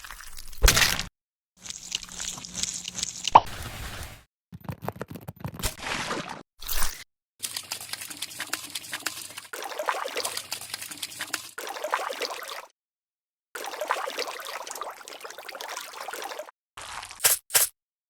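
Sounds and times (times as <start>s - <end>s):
wet crackly liquid sounds: 0.0s - 0.8s, 1.6s - 3.7s, 5.6s - 12.7s, 13.6s - 17.2s.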